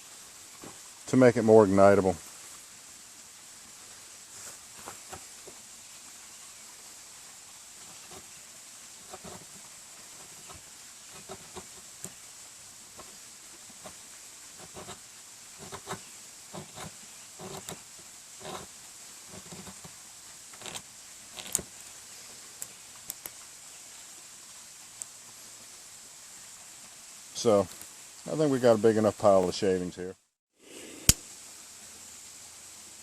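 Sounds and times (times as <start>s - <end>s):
creek hissing: 0.0s - 33.0s
knife blade scraping wood: 7.8s - 8.4s, 9.0s - 9.6s, 10.2s - 12.2s, 14.6s - 15.0s, 15.6s - 18.7s, 19.3s - 19.9s, 20.6s - 21.7s.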